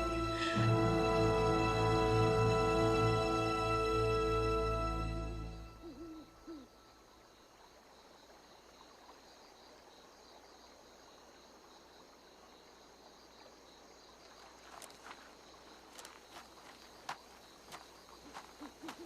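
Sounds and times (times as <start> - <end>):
low steady hiss: 0.0 - 19.0
insects chirring: 5.6 - 19.0.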